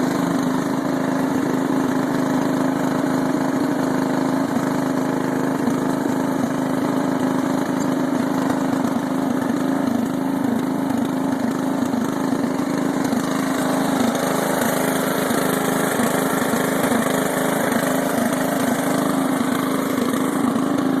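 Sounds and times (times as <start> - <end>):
lawn tractor engine running: 0.0 - 21.0.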